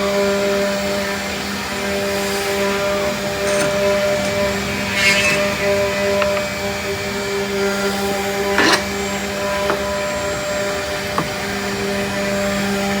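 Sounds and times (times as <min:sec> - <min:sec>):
router spindle humming: 0:01.6 - 0:13.0
rasp of cutting wood: 0:02.7 - 0:07.2, 0:08.3 - 0:10.1.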